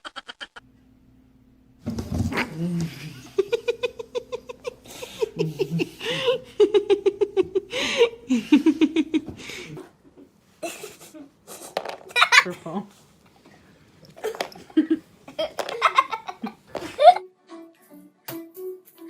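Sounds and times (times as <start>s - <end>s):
person laughing hard: 0.0s - 0.6s, 2.8s - 9.4s, 14.2s - 17.2s.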